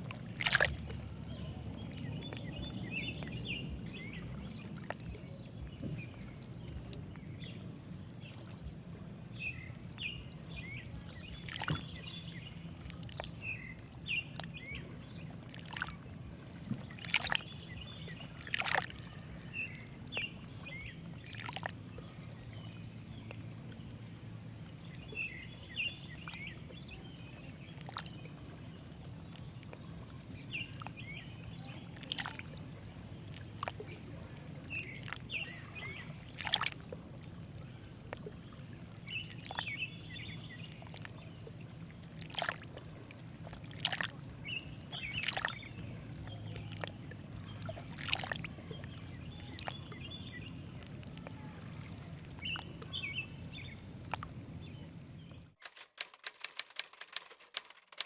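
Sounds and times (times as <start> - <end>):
steady low hum: 0.0 - 55.6
sharp clicks: 55.6 - 58.0.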